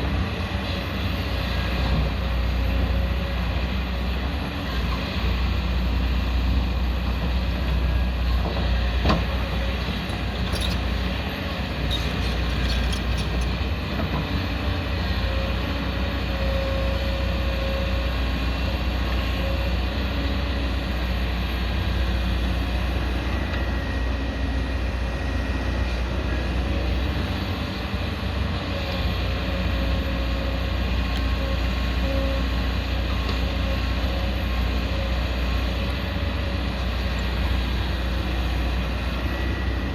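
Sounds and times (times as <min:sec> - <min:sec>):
excavator diesel engine digging: 0:00.0 - 0:39.9.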